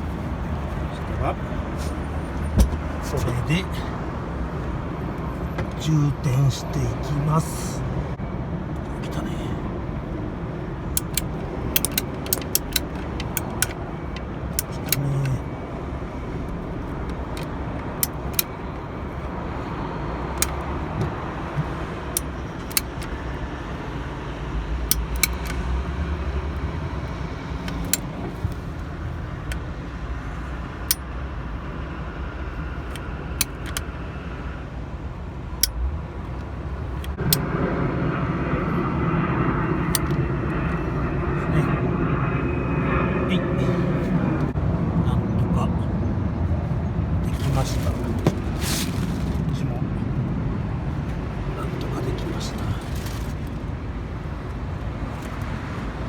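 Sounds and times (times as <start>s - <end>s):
steady outdoor rumble: 0.0s - 56.0s
caulking gun clicks: 11.0s - 13.8s, 22.2s - 23.2s, 24.9s - 25.6s.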